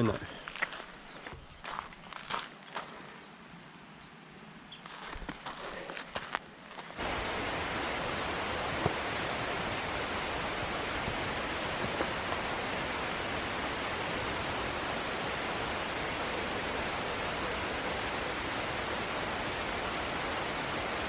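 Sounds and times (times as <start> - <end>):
rushing river water: 6.9 - 21.0.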